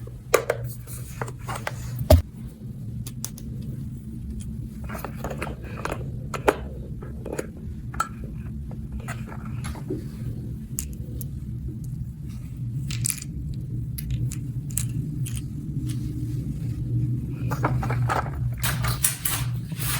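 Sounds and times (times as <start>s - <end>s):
low hum: 0.9s - 19.9s
small hard objects clinking: 12.8s - 16.0s.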